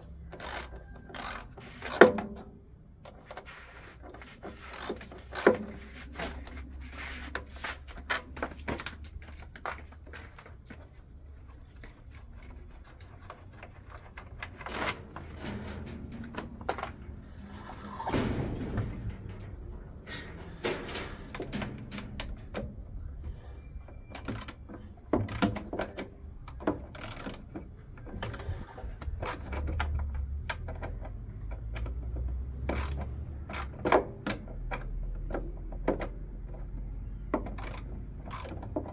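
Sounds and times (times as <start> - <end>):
tools and metal parts clinking: 7.9 - 10.6, 11.8 - 31.7
metal scrape: 14.5 - 22.2.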